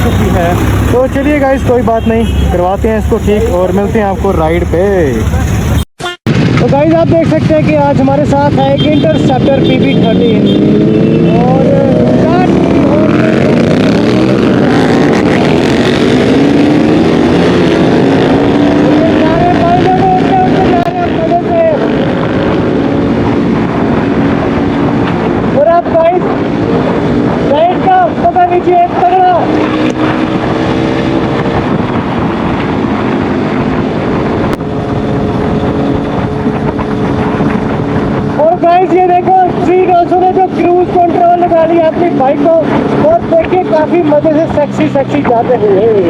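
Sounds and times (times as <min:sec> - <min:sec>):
motorcycle engine running: 0:00.0 - 0:05.8
motorcycle engine cruising: 0:00.0 - 0:05.9, 0:07.4 - 0:46.0
wind rushing: 0:09.3 - 0:46.0.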